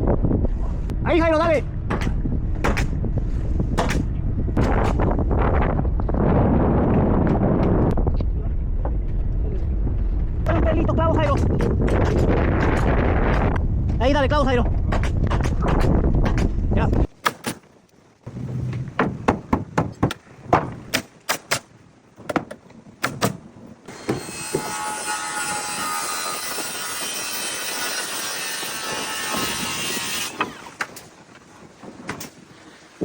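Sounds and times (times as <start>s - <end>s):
steady rushing noise: 0.0s - 17.1s
nails being driven into wood: 1.9s - 2.9s, 3.8s - 5.0s, 14.9s - 16.5s, 22.3s - 23.4s.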